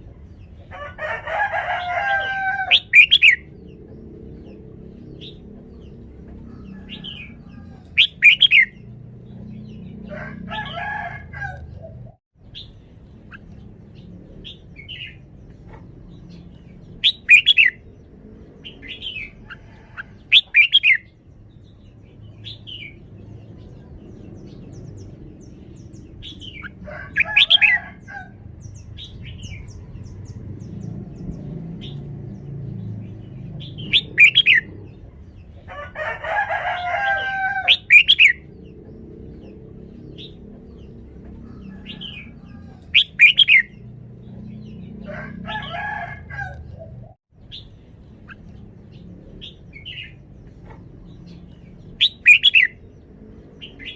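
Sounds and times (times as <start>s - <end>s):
steady low rumble: 2.8s - 10.2s, 21.1s - 27.2s, 28.0s - 35.7s.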